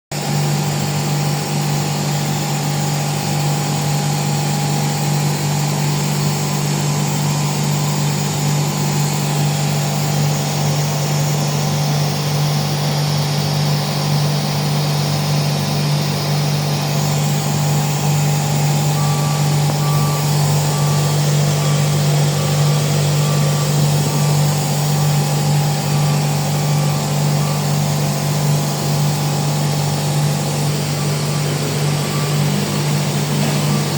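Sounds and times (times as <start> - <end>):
air compressor humming: 0.1 - 33.9
faint beeping tone: 15.9 - 33.9.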